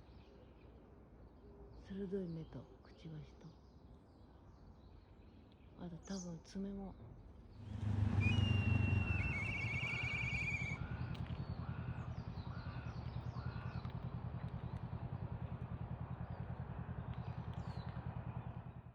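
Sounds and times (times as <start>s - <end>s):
kite whistling call and trill: 8.2s - 10.8s
short bird calls: 8.2s - 13.8s
low pulsing hum: 10.7s - 18.8s.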